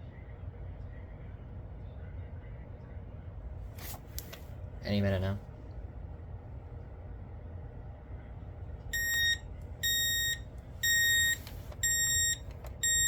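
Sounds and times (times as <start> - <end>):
alarm clock beeping: 9.0 - 13.0.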